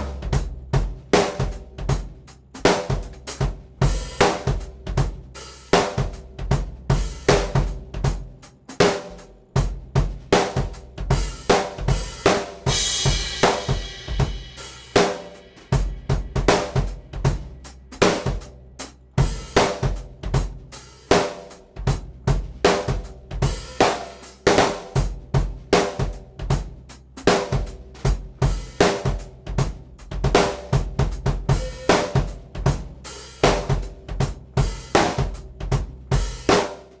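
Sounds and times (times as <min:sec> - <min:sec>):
drum kit groove: 0:00.0 - 0:37.0
cymbal crash: 0:12.7 - 0:16.1.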